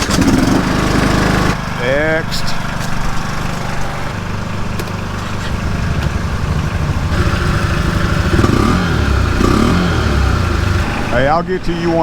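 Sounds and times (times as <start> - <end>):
engine running: 0.0 - 12.0.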